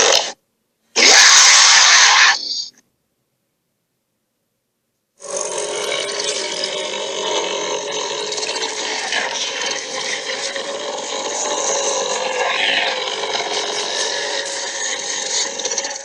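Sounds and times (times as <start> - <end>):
dragon growl: 1.0 - 2.4, 5.2 - 16.0.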